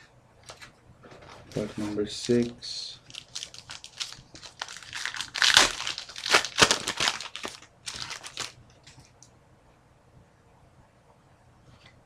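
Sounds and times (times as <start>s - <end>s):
plastic wrapper crinkling: 0.5s - 9.0s.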